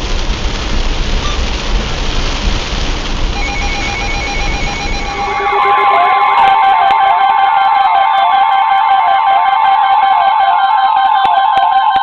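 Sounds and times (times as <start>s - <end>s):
low rumble: 0.0s - 6.8s
heavy rain hiss: 0.0s - 6.9s
warbling tones: 3.4s - 7.5s
faint rapid beeping tones: 3.4s - 8.3s
guitar music: 3.5s - 8.8s.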